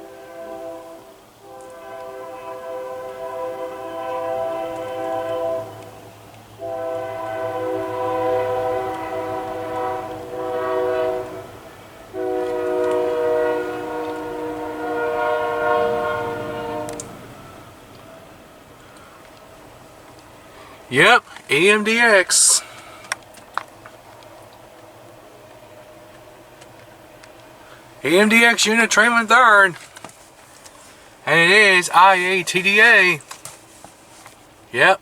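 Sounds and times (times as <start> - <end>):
locomotive air horn blasts: 0.0 - 17.8, 20.4 - 23.1, 25.8 - 29.7
train rumbling: 0.0 - 35.0.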